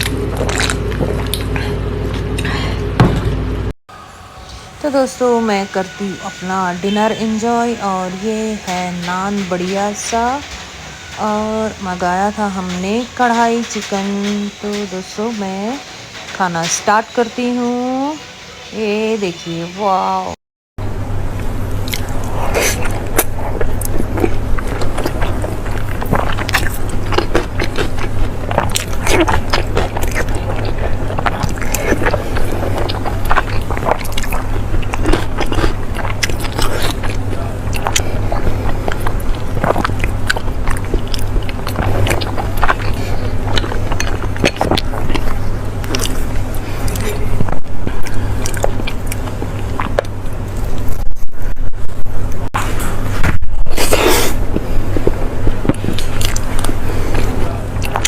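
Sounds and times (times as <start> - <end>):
close-up chewing and biting: 0.0 - 2.5, 21.9 - 50.2, 53.2 - 58.0
steady low hum: 0.0 - 58.0.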